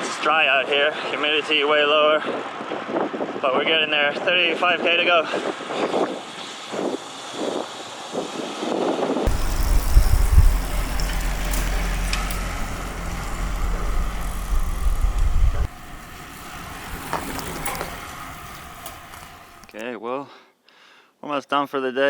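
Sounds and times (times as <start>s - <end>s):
wind rumble on microphone: 2.1s - 19.8s.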